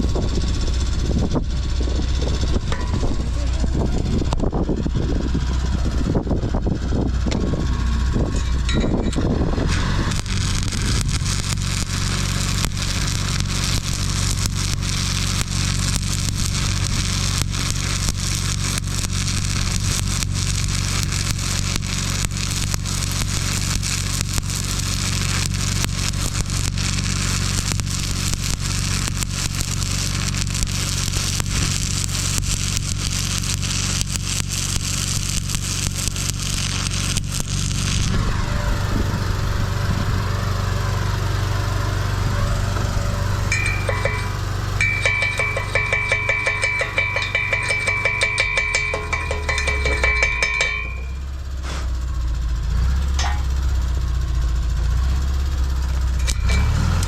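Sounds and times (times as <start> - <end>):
welder low hum: 0.0 - 54.9, 55.5 - 57.0
welding arc crackling: 6.8 - 39.8, 42.0 - 57.0
handling rumbles and knocks: 43.5 - 51.2.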